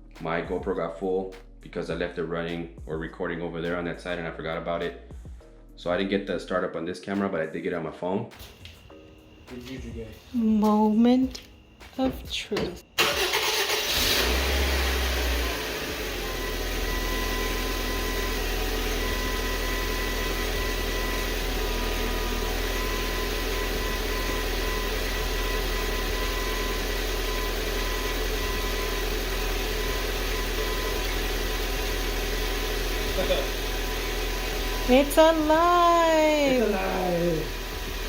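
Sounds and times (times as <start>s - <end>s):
car engine idling: 13.0s - 38.0s.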